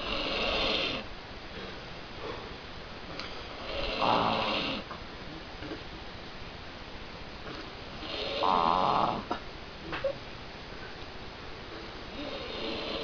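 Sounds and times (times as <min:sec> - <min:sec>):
man snoring: 0:00.0 - 0:01.1, 0:03.6 - 0:04.9, 0:08.0 - 0:09.3, 0:12.1 - 0:13.0.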